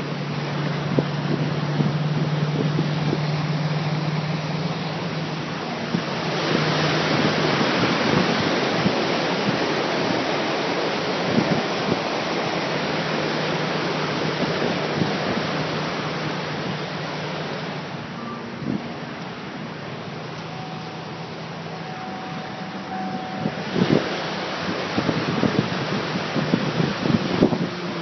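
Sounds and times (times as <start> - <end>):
floodwater rushing: 0.0 - 28.0
low steady hum: 12.1 - 28.0.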